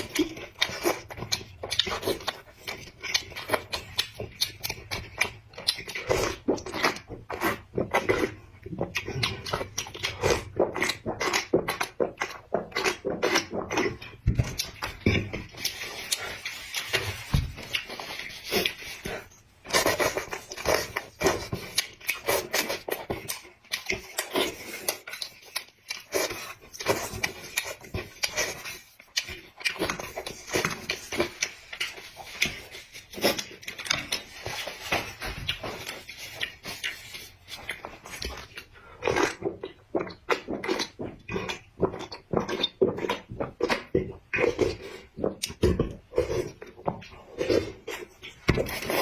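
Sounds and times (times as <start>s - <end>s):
chewing and mouth smacks: 0.0s - 49.0s.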